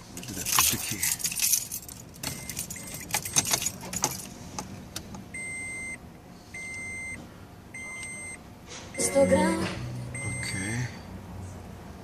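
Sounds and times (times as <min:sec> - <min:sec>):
keys jangling: 0:00.2 - 0:04.4
car warning chime beeps: 0:02.2 - 0:03.6, 0:05.3 - 0:10.9.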